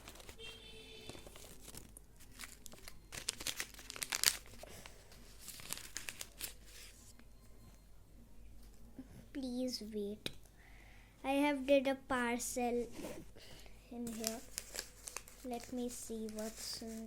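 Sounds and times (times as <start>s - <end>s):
paper rustling and crinkling: 0.0s - 7.1s, 14.0s - 17.0s.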